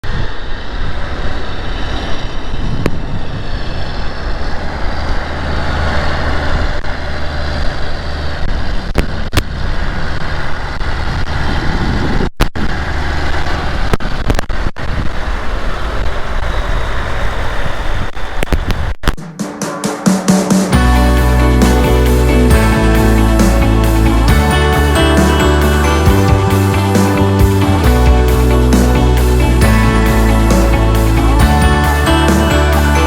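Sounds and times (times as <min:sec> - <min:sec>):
diesel farm machinery running: 0:00.1 - 0:13.9, 0:20.7 - 0:33.0.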